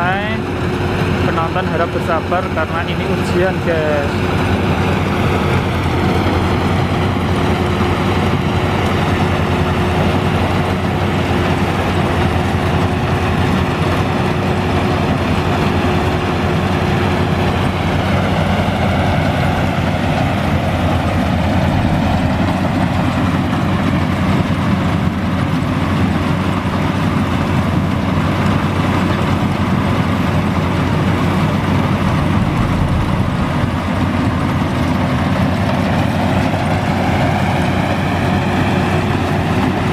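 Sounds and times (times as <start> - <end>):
harvester diesel engine running: 0.0 - 39.9
steady mechanical tone: 19.8 - 25.1, 30.8 - 35.7.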